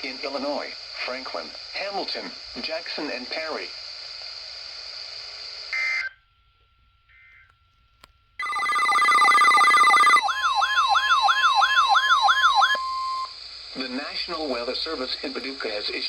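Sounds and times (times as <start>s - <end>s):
radio hiss: 0.0s - 6.1s, 11.4s - 16.0s
weather radio alert tone warbling: 8.4s - 13.3s.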